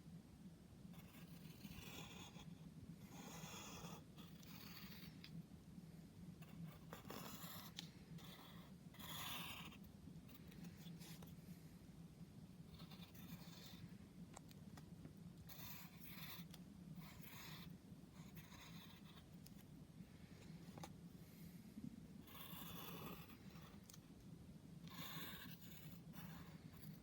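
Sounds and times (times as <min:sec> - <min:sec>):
steady low hum: 0:00.0 - 0:27.0
drawing tool scratching on paper: 0:00.9 - 0:05.3, 0:06.4 - 0:11.4, 0:12.7 - 0:13.9, 0:15.4 - 0:19.7, 0:22.2 - 0:24.0, 0:24.8 - 0:27.0.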